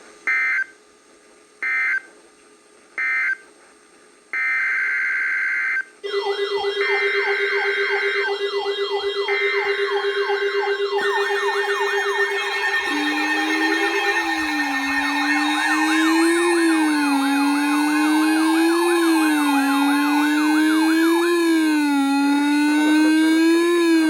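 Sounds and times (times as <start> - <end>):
wailing electronic siren: 6.0 - 24.0
data tone squawks: 6.1 - 21.6.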